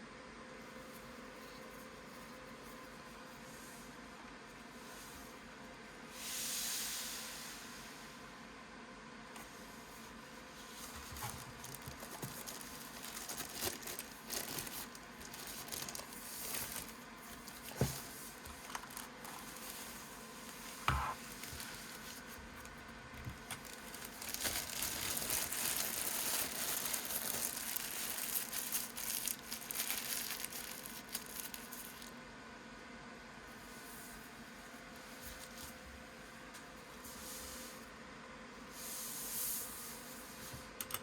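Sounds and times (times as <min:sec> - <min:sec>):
plastic and paper crinkling: 0:10.6 - 0:32.2, 0:35.0 - 0:35.8.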